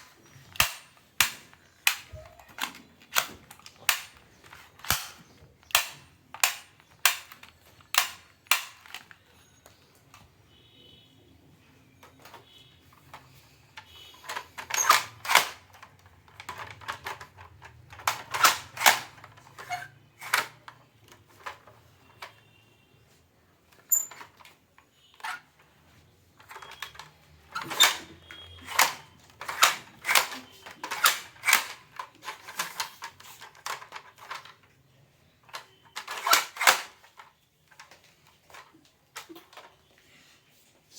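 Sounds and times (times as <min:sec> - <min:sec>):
plastic toy guns clicking: 0:00.5 - 0:09.2, 0:13.8 - 0:21.6, 0:26.4 - 0:34.7, 0:35.5 - 0:39.7.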